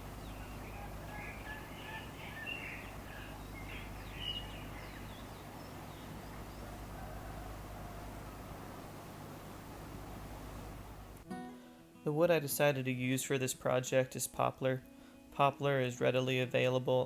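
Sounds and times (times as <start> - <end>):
birds chirping: 0.0 - 11.2
low outdoor background noise: 0.0 - 17.0.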